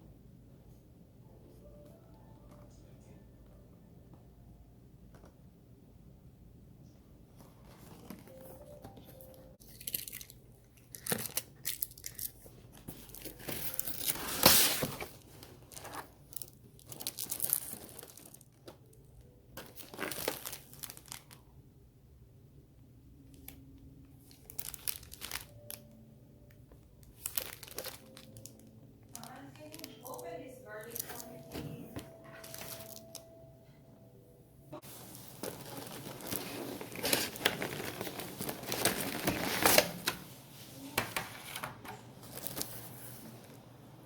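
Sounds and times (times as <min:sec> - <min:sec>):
packaging tearing and crinkling: 0:09.6 - 0:12.4, 0:13.0 - 0:18.6, 0:19.6 - 0:21.4, 0:24.3 - 0:25.8, 0:27.1 - 0:30.1, 0:32.4 - 0:33.2, 0:35.3 - 0:40.1.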